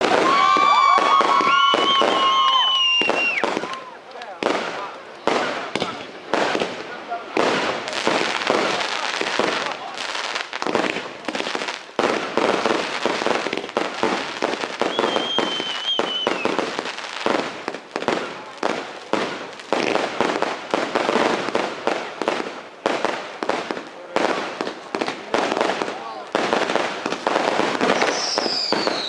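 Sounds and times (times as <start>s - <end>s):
fireworks launching and bursting: 0.0s - 29.0s
high wavering whistle: 14.8s - 16.4s.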